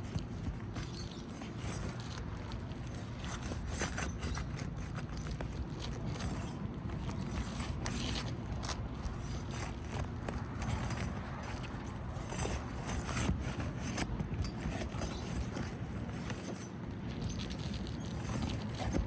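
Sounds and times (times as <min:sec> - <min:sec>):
tool scraping and clicking shingles: 0:00.0 - 0:19.0.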